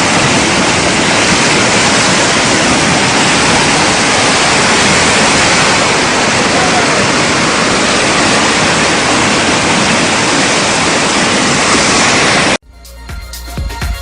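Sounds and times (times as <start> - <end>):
floodwater rushing: 0.0 - 12.6
electronic music with beat: 12.6 - 14.0.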